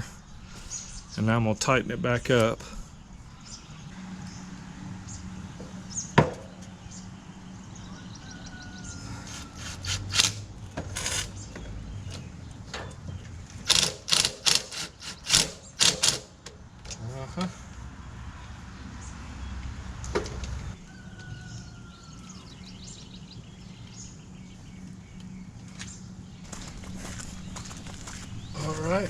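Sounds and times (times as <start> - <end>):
hand tools clicking and knocking: 13.7 - 16.6.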